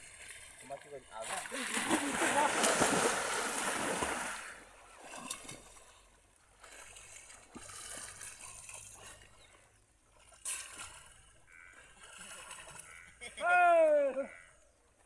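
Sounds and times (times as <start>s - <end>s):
water splashing and trickling: 0.0s - 15.0s
loud water splash: 1.3s - 4.6s.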